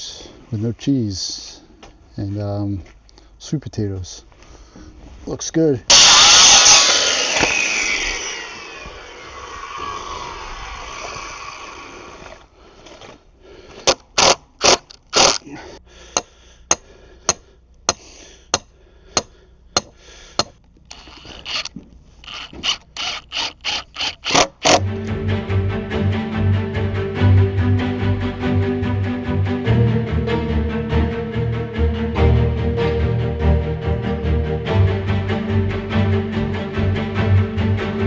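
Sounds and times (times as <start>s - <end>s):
sharp scraping strokes: 5.9s - 12.1s
whirring falling in pitch: 5.9s - 12.3s.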